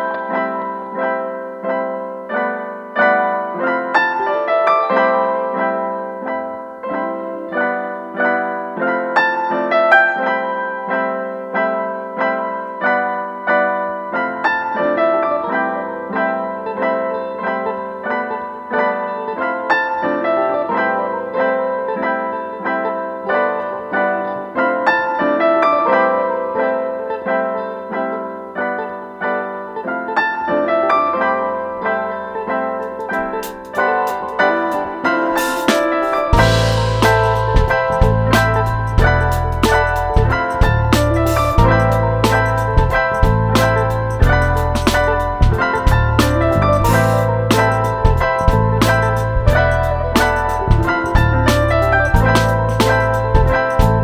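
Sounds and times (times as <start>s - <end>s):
piano repeated notes: 0.0s - 54.0s
low bass note: 36.4s - 54.0s.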